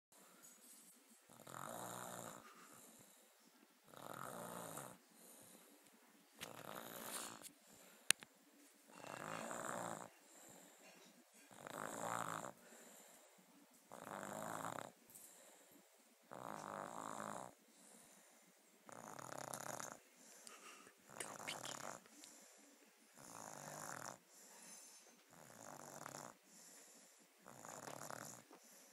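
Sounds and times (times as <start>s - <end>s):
quiet breathing: 0.2s - 28.9s
person snoring: 1.3s - 3.1s, 3.9s - 5.6s, 6.4s - 7.5s, 8.9s - 10.8s, 11.5s - 12.6s, 13.9s - 14.9s, 16.3s - 18.1s, 18.9s - 22.0s, 23.2s - 26.4s, 27.4s - 28.4s.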